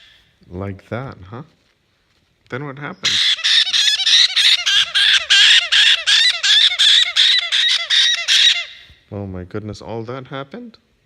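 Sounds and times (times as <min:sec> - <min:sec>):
parrot squawking: 0:03.0 - 0:08.9.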